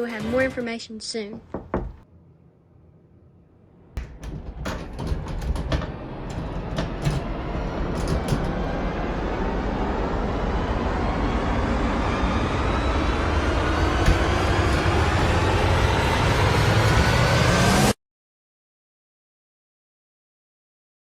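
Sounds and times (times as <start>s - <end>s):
vehicle rumbling: 3.9s - 17.9s
sharp clicks and knocks: 4.0s - 8.9s, 14.0s - 16.0s.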